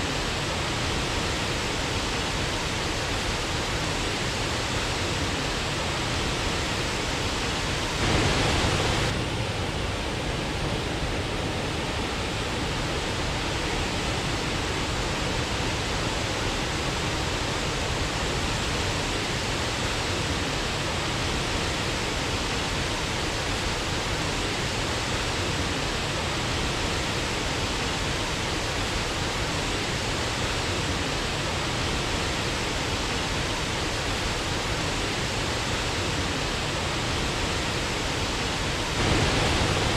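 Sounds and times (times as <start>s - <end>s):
waterfall rushing: 6.5s - 9.2s, 31.2s - 39.9s.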